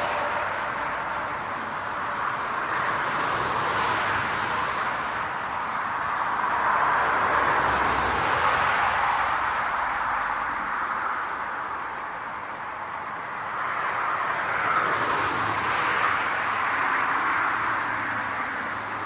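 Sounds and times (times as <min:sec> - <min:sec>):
jet engines roaring: 0:00.0 - 0:10.6.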